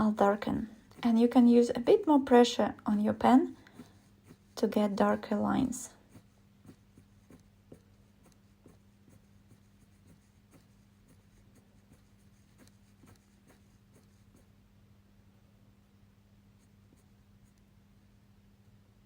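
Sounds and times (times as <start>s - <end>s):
pen scratching on paper: 0.0s - 2.4s, 3.4s - 14.6s.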